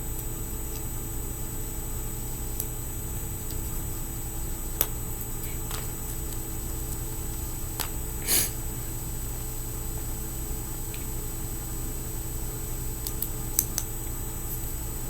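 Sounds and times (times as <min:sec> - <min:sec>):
steady background hum: 0:00.0 - 0:15.0
small sharp clicks of parts: 0:13.0 - 0:13.9.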